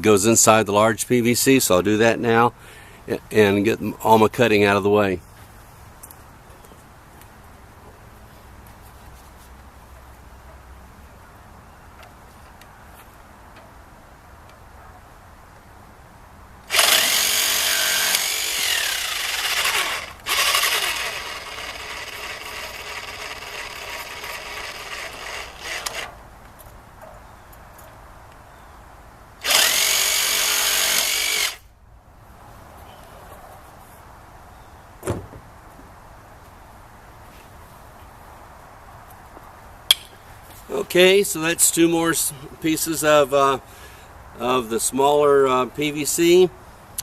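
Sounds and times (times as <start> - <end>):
power tool cutting plastic pipe: 16.7 - 26.1, 29.4 - 31.6.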